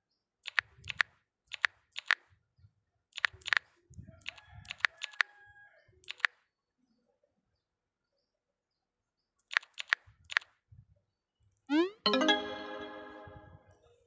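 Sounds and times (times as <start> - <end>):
sharp clicks: 0.4 - 2.2, 3.2 - 3.6, 6.0 - 6.4, 9.5 - 10.5.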